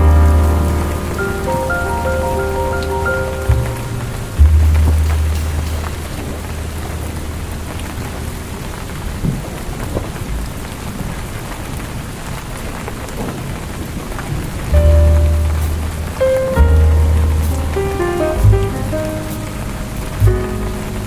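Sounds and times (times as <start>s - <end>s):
thunder rumble: 0.0s - 9.5s, 14.4s - 21.0s
rain pattering on a window: 0.0s - 21.0s.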